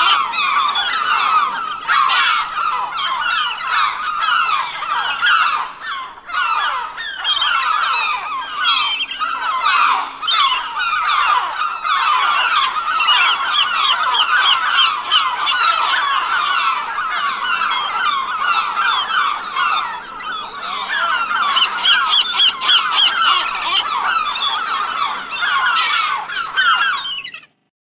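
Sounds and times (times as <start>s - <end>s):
flock of gulls calling: 0.0s - 27.6s.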